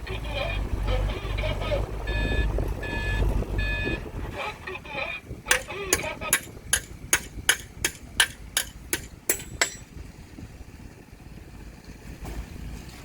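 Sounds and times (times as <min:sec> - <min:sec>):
low engine rumble: 0:00.0 - 0:13.0
sharp evenly spaced clacks: 0:05.5 - 0:09.9.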